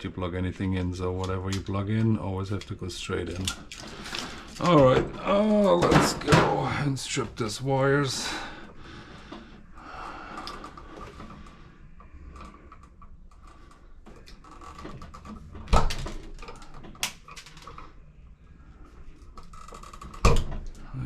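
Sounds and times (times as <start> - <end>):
wire strippers clicking: 0.8 - 5.0.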